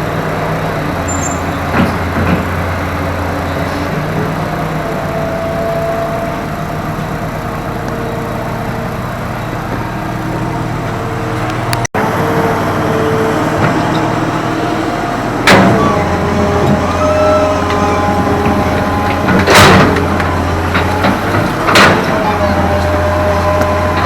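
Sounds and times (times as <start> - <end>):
excavator diesel engine running: 0.0 - 24.0.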